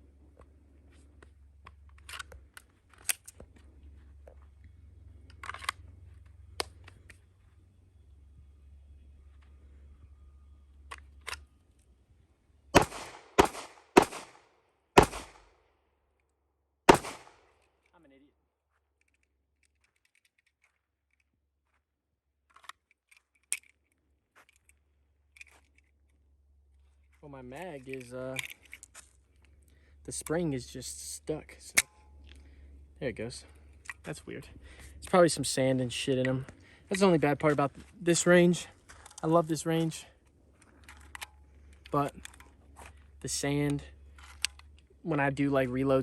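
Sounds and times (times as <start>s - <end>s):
low steady hum: 0.0s - 18.4s, 23.1s - 46.0s
pistol magazine clicks and rattles: 1.6s - 3.4s, 5.2s - 7.2s, 19.0s - 21.3s, 22.5s - 26.1s, 27.8s - 29.5s, 40.6s - 42.6s, 43.7s - 44.9s.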